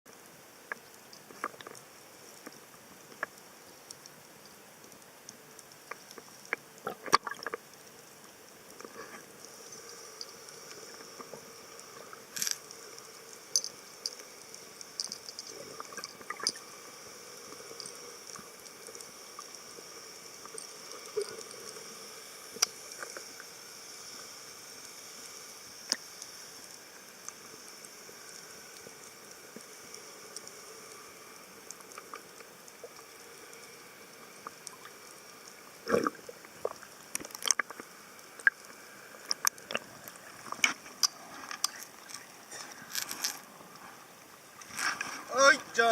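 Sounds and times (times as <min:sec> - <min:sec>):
water clicks pops and drips: 0:05.9 - 0:07.6.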